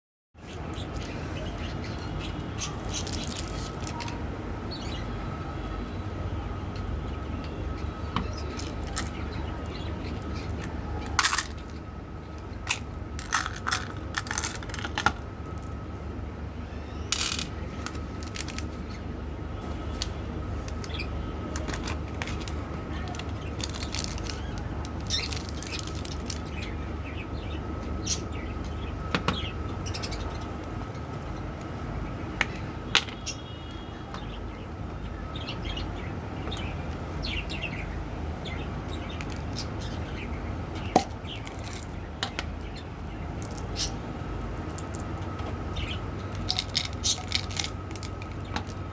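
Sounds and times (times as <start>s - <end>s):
steady low hum: 0.4s - 48.9s
plastic packaging crinkling: 12.7s - 15.2s, 21.7s - 26.5s, 46.3s - 48.8s.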